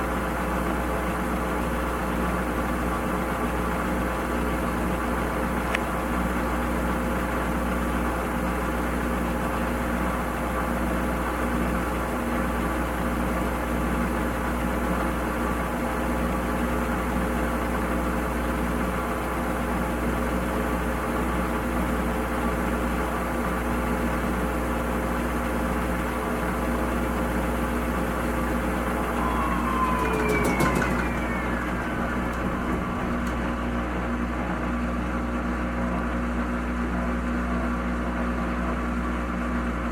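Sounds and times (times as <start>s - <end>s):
washing machine motor hum: 25.3s - 36.4s
falling whine with clicks: 28.5s - 34.2s.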